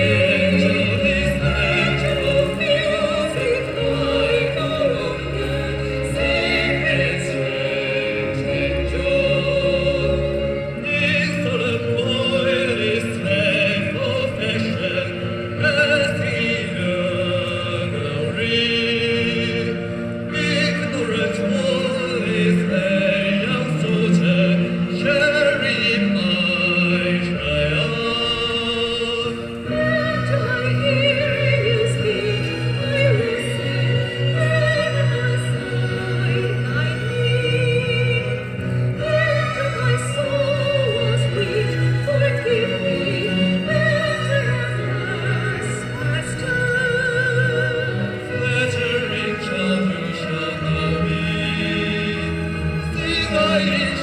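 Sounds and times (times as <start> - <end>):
musical accompaniment with deep bass: 0.0 - 54.0
person singing with vibrato: 0.0 - 54.0.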